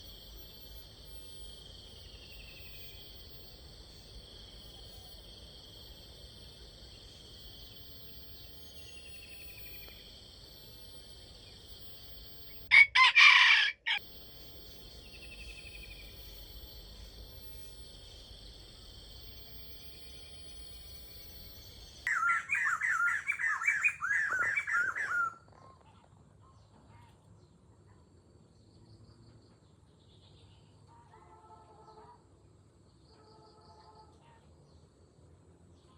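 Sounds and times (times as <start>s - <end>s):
insects buzzing: 0.0s - 25.4s
rooster crowing: 12.7s - 14.1s.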